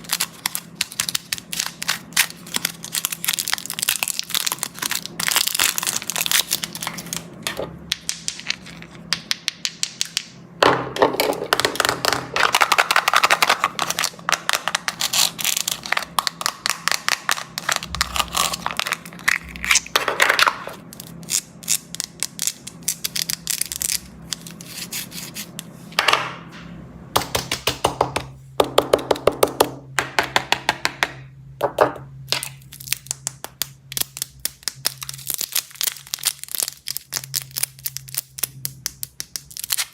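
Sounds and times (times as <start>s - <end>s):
plastic wrappers crinkling: 0.0s - 7.7s, 11.3s - 24.7s, 32.3s - 39.9s.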